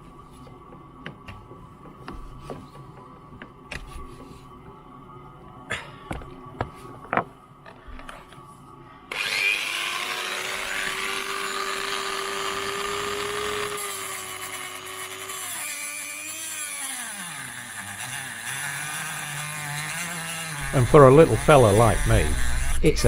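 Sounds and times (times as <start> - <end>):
rotary tool whining: 9.1 - 23.0.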